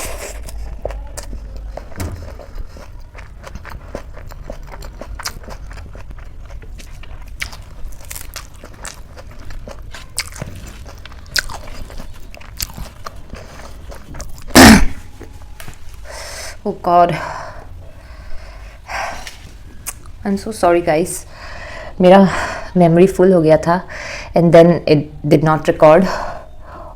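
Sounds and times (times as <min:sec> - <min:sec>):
wet chewing and lip smacks: 0:00.0 - 0:14.6, 0:19.2 - 0:20.2.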